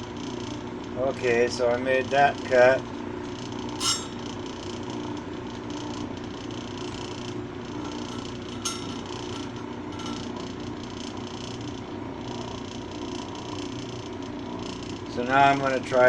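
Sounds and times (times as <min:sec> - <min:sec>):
sharp clink: 0:03.8 - 0:04.3, 0:07.8 - 0:10.4.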